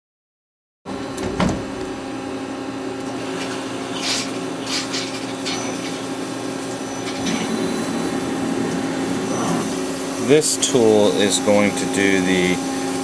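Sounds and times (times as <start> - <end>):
lathe motor and spindle hum: 6.0 - 13.0
hissing surges: 7.1 - 11.6.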